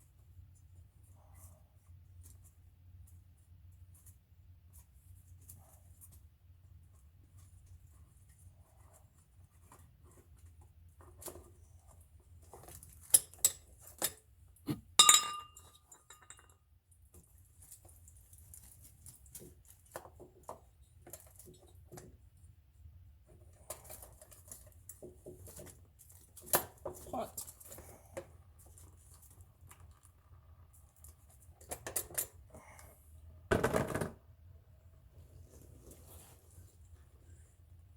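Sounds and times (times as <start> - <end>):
metallic clank ringing: 15.0 - 15.6
metal tools clinking: 15.0 - 16.5.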